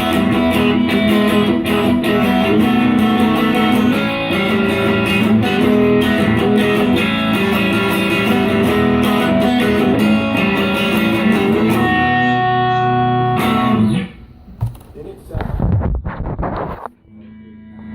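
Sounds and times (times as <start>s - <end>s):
held guitar chord: 0.0s - 14.2s
plucked guitar notes: 0.0s - 14.2s, 17.0s - 17.9s.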